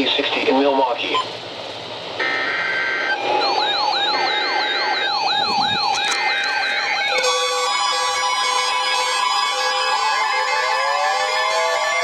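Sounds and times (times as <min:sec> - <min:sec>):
warbling alert siren: 0:02.2 - 0:12.0
steady alert tone: 0:04.8 - 0:07.6.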